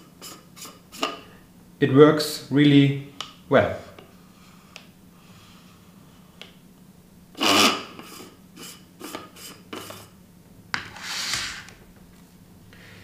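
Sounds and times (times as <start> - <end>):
scraping and rubbing noises: 10.8 - 13.0.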